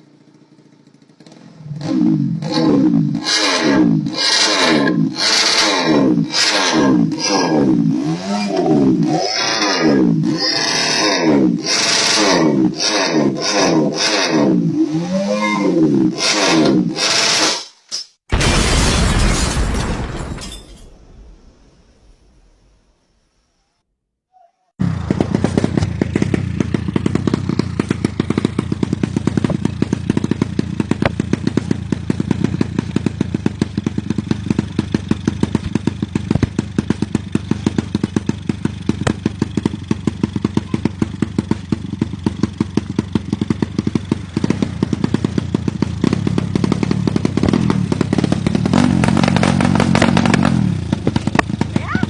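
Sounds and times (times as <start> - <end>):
racing motorcycle engine running: 0.0 - 17.7, 24.8 - 52.0.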